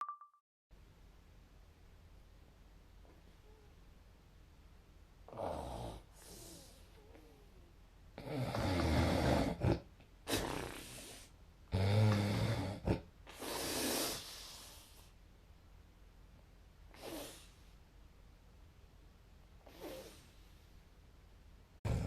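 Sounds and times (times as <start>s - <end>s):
person snoring: 5.3s - 6.8s, 8.2s - 14.3s.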